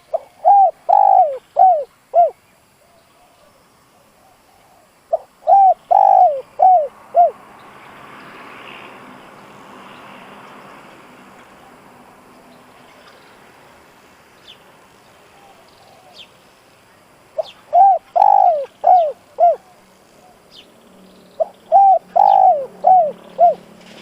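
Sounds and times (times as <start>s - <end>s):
dove cooing: 0.0s - 3.5s, 4.2s - 7.4s, 15.3s - 16.3s, 17.4s - 20.4s, 21.4s - 23.8s.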